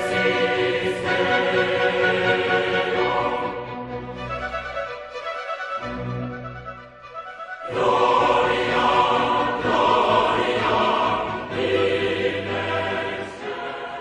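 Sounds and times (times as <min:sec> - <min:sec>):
choir and operatic singing: 0:00.0 - 0:04.7, 0:07.6 - 0:14.0.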